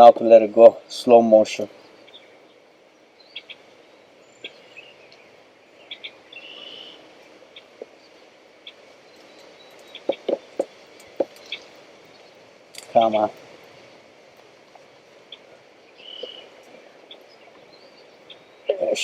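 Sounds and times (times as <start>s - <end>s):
birds chirping: 0.0s - 19.0s
bird trill: 1.7s - 12.4s, 15.2s - 19.0s.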